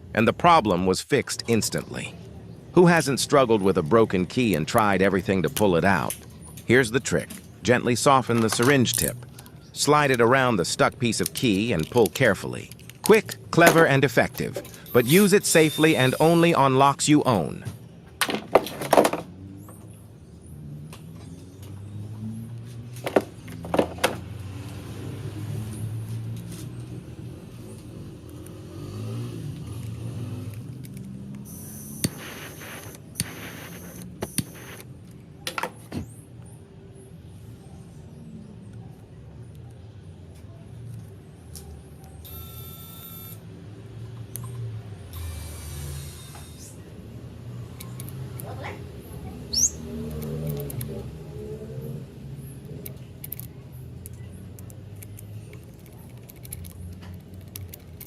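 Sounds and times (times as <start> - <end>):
padlock and key jingling: 11.0 - 16.3, 52.7 - 58.0
sharp metallic clicks and clinks: 52.6 - 58.0.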